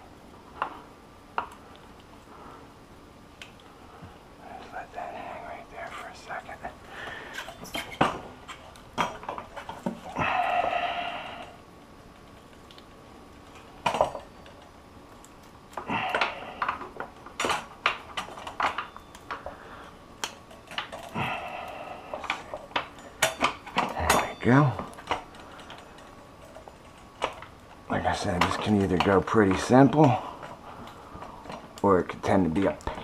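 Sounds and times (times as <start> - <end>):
metal tools clinking: 22.2 - 27.4.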